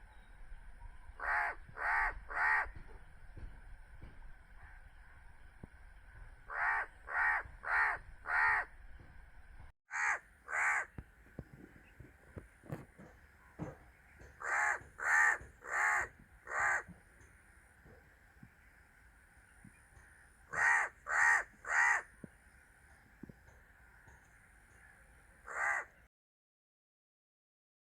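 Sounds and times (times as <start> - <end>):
crow cawing: 1.2 - 2.8, 6.5 - 8.8, 9.9 - 11.0, 14.2 - 17.0, 20.5 - 22.2, 25.4 - 26.0.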